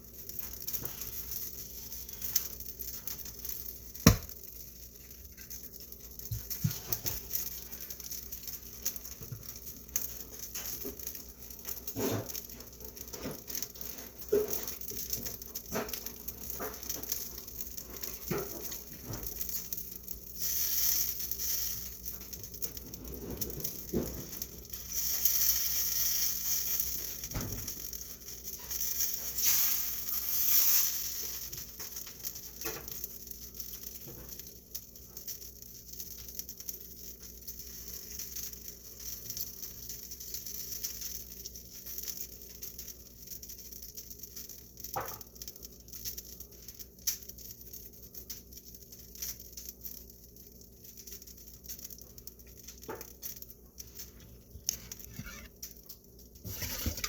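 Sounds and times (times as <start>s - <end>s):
cooking hiss: 0.0s - 57.0s
utensils and dishes clattering: 56.5s - 57.0s.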